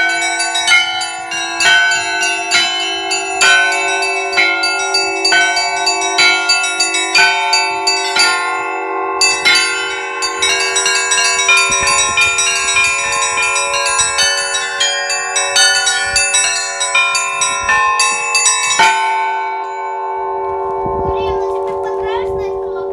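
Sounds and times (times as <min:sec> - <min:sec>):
low church bell: 0:00.0 - 0:22.9
rapid higher church bells: 0:00.0 - 0:22.9.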